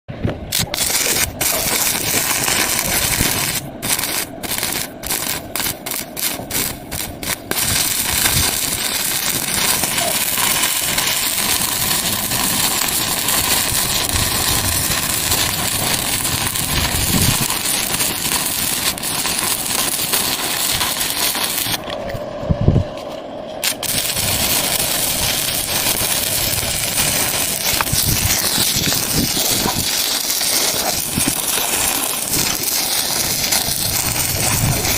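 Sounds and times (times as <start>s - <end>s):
welding arc crackling: 0.4s - 21.9s, 23.6s - 34.9s.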